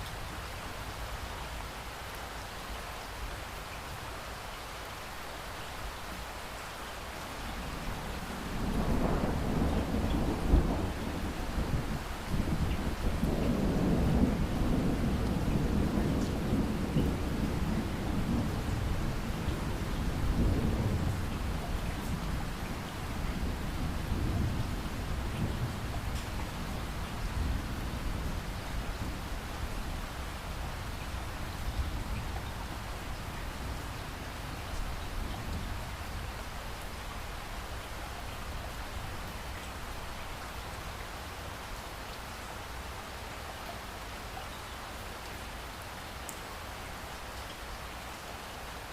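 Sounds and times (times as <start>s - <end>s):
steady rain: 0.0s - 48.9s
low rumble of thunder: 7.4s - 40.2s.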